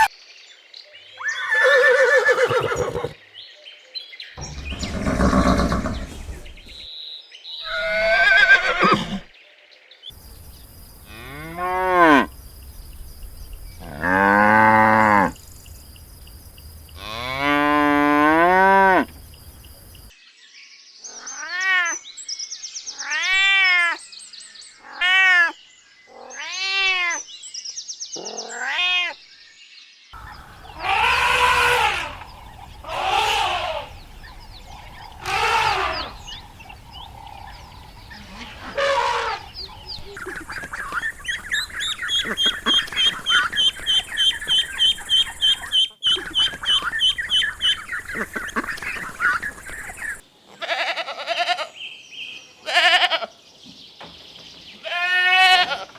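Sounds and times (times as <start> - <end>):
higher farm animal calls: 1.2 - 3.2, 4.4 - 6.9, 7.6 - 9.3, 30.2 - 51.7, 52.6 - 53.3, 54.8 - 55.9
cattle mooing: 4.4 - 6.8, 30.2 - 39.9.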